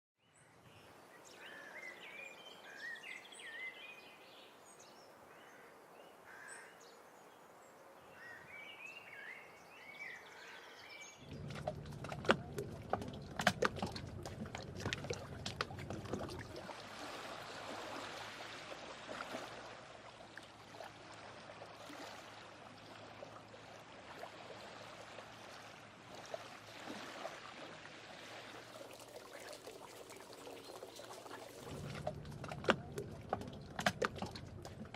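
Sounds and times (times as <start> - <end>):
low hum: 11.2 - 17.9, 31.4 - 34.9
wash of water: 11.2 - 34.9
birds chirping: 29.4 - 32.0
knocks and clicks: 31.8 - 34.9.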